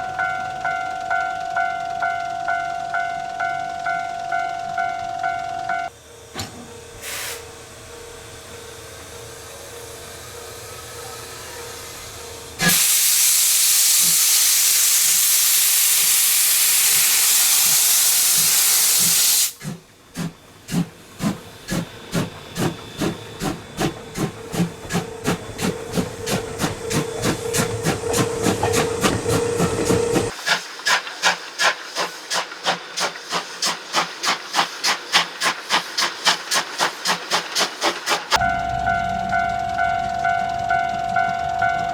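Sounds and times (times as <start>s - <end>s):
steam locomotive exhaust chuffs: 1.8s - 41.9s
steam hiss: 7.0s - 7.6s, 9.9s - 38.4s.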